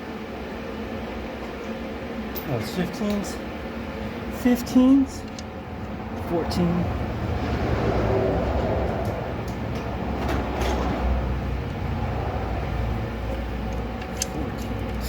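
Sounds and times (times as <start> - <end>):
low rumble: 5.0 - 14.4.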